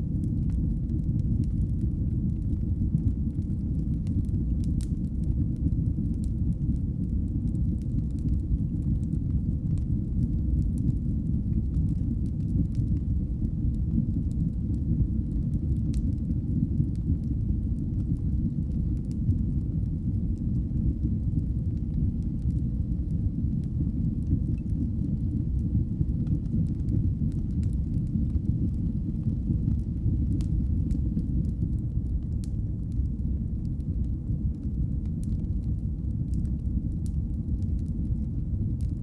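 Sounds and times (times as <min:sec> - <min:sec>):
fire crackles and pops: 0:00.0 - 0:39.0
fireplace fire burning: 0:00.0 - 0:39.0.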